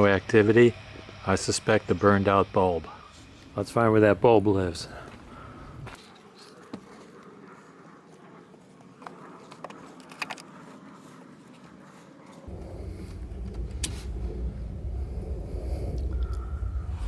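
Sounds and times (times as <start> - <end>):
low rumble: 12.5 - 17.0.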